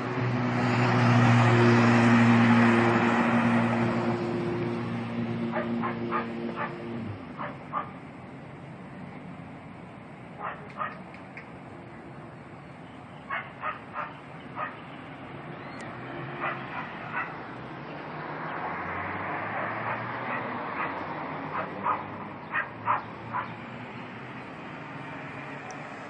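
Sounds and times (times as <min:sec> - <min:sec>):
dog barking: 0:05.5 - 0:06.8, 0:07.4 - 0:08.0, 0:10.4 - 0:11.0, 0:13.3 - 0:14.8, 0:16.4 - 0:17.4, 0:19.8 - 0:23.6.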